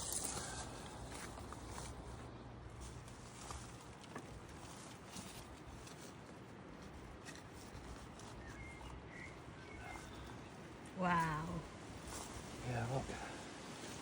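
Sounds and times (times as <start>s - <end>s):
soft rustles: 0.0s - 14.0s
faint chirp: 8.3s - 10.6s.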